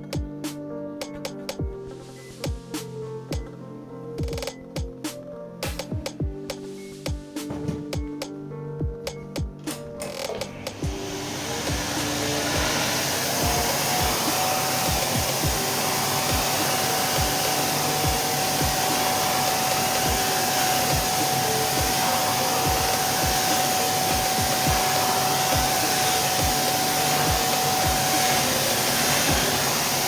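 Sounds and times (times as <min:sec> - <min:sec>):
vacuum cleaner motor whining: 0:10.0 - 0:30.0.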